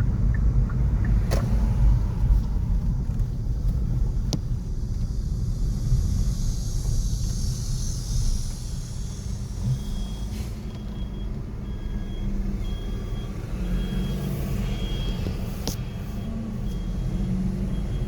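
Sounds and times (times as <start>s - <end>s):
street traffic rumbling: 0.0s - 18.0s
truck reversing alarm beeping: 8.2s - 18.0s.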